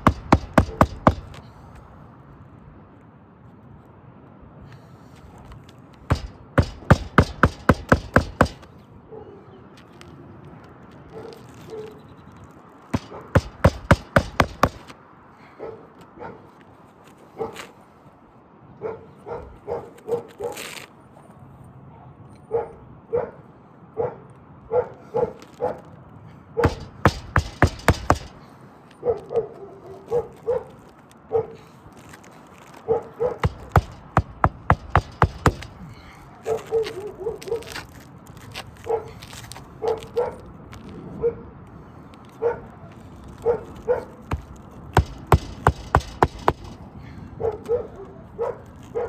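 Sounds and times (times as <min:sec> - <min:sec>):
hammer driving roofing nails: 0:00.0 - 0:01.8, 0:06.0 - 0:08.7, 0:13.0 - 0:14.9, 0:26.6 - 0:28.5, 0:33.4 - 0:36.2, 0:44.2 - 0:47.0
dog barking: 0:22.5 - 0:23.4, 0:24.0 - 0:25.0.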